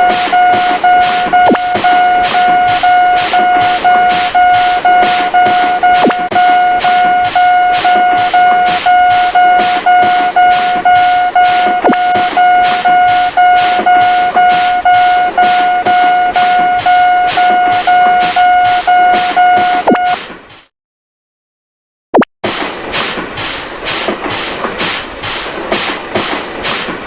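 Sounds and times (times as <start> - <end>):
level-crossing alarm ringing: 0.0 - 20.2.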